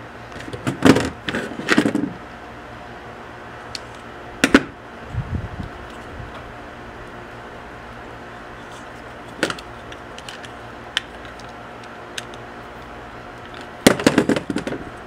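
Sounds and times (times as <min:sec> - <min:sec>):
loud clicks and clatter: 0:09.2 - 0:14.9.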